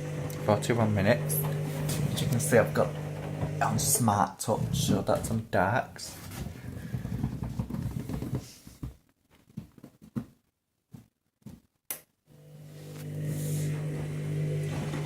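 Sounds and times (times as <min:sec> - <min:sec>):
washing machine motor hum: 0:00.0 - 0:08.2, 0:12.3 - 0:15.0.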